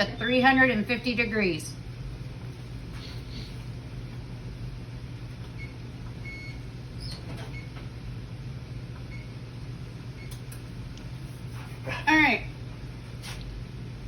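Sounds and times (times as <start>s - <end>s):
steady low hum: 0.0s - 14.0s
oven control panel beeping: 5.4s - 8.0s, 8.9s - 9.5s, 10.1s - 10.6s.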